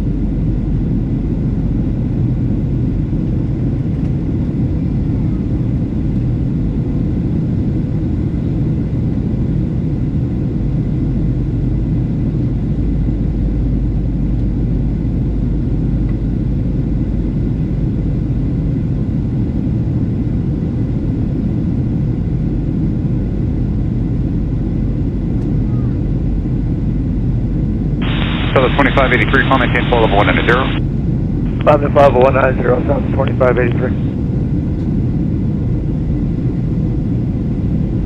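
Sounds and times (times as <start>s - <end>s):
jet engines with rushing airflow: 0.0s - 38.0s
faint steady tone: 28.0s - 30.8s.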